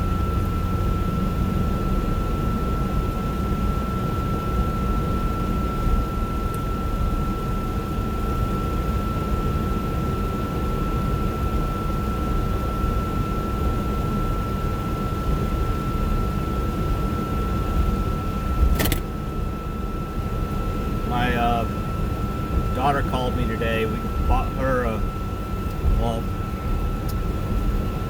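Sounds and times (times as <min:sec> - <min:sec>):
road and engine noise: 0:00.0 - 0:04.0, 0:17.7 - 0:28.0
sharp click: 0:18.7 - 0:19.0.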